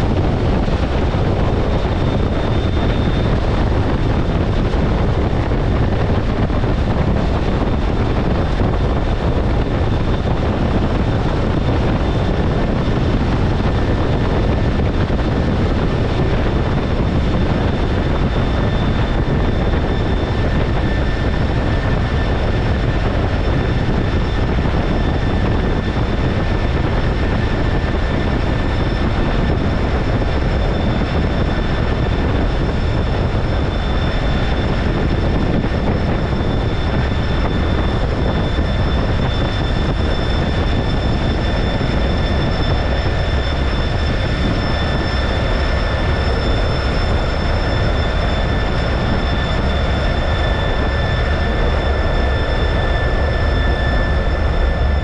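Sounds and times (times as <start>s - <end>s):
jet engine roar with whine: 0.0s - 55.0s.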